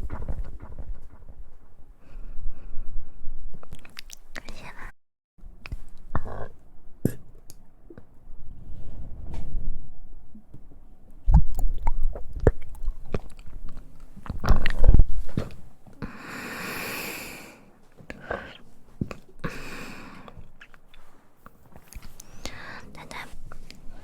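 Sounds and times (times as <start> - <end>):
chewing mouth sounds: 3.6 - 4.8, 11.3 - 15.6, 20.2 - 22.4
low mouth sound: 5.6 - 8.1, 11.3 - 17.4.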